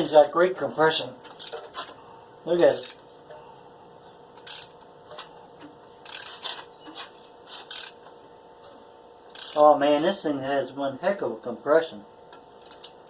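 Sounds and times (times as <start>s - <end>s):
ratchet wrench clicking: 1.3s - 1.8s, 2.7s - 3.0s, 4.4s - 4.8s, 6.0s - 6.6s, 7.6s - 8.1s, 9.3s - 9.6s, 12.3s - 13.0s.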